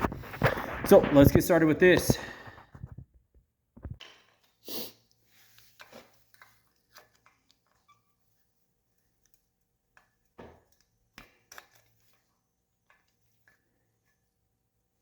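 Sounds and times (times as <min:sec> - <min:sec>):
short soft rush: 0:00.0 - 0:03.0.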